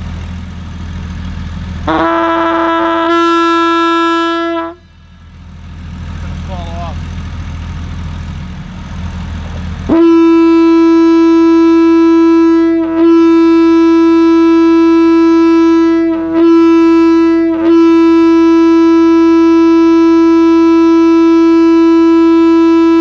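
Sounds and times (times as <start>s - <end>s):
low hum: 0.0s - 23.0s
air horn steady note: 1.8s - 5.0s, 9.9s - 23.0s.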